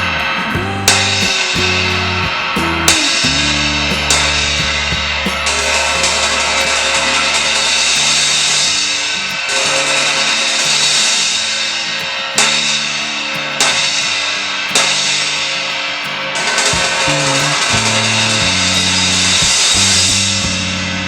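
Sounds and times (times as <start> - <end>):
bass line: 0.0 - 8.2, 16.8 - 21.0.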